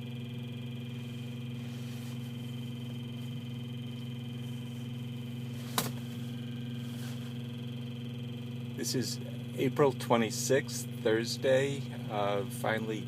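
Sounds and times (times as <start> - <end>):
car radio electronic hum: 0.0 - 13.0.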